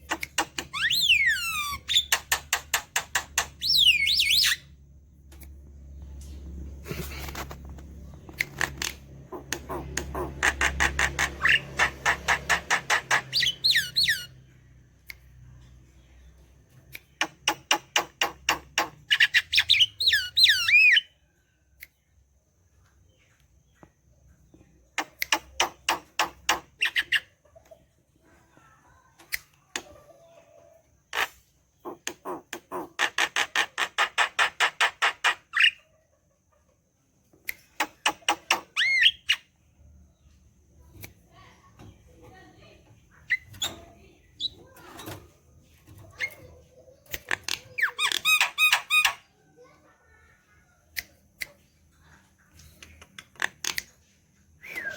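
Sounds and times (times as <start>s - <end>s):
bird harsh chattering: 8.6s - 14.3s
bird whistled notes: 54.6s - 54.9s.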